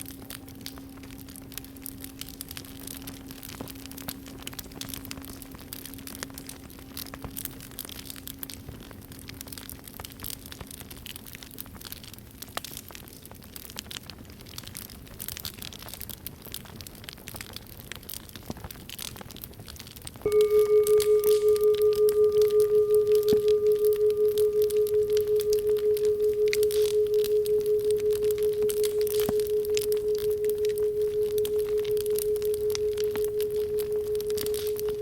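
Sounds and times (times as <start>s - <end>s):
campfire crackling and popping: 0.0s - 35.0s
singing bowl ringing: 20.3s - 35.0s.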